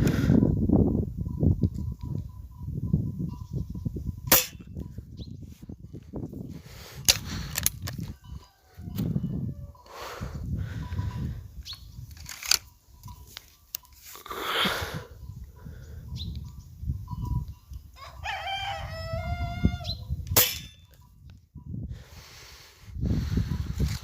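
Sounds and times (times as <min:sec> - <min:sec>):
rooster crowing: 0:08.0 - 0:10.0, 0:18.0 - 0:20.0.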